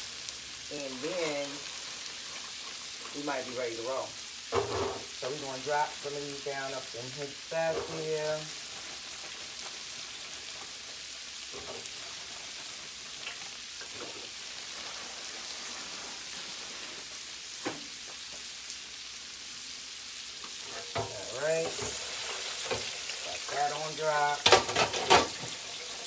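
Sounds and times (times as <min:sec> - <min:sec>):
oil sizzling: 0:00.0 - 0:26.0.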